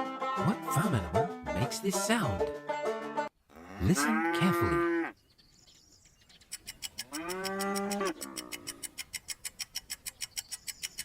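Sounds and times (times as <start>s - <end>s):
cow mooing: 3.5s - 5.2s, 7.1s - 8.8s
fast even ticking: 6.4s - 11.0s.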